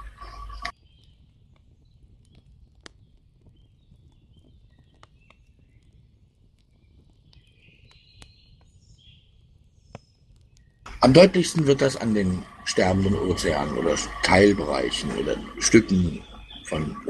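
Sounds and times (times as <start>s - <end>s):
low hum: 10.9s - 17.0s.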